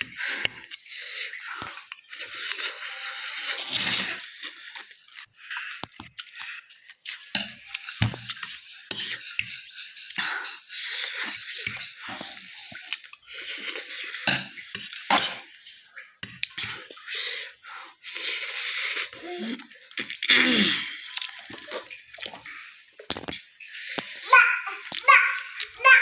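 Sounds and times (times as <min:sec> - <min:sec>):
cutlery clinking and scraping dish: 0:07.1 - 0:09.7, 0:11.1 - 0:15.6, 0:16.2 - 0:16.9.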